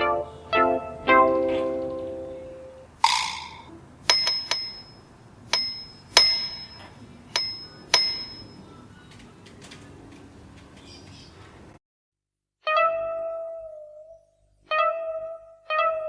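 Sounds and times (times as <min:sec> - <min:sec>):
small high-pitched bell: 0:03.2 - 0:05.0, 0:05.6 - 0:08.6.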